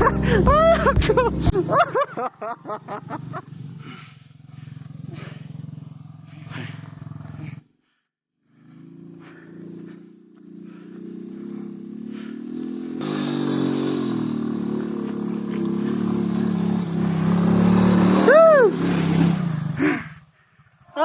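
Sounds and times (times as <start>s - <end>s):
rising and falling vocal cry: 0.0s - 1.7s, 18.0s - 20.2s
motorcycle engine running: 0.0s - 1.8s, 2.5s - 7.8s, 8.4s - 21.0s.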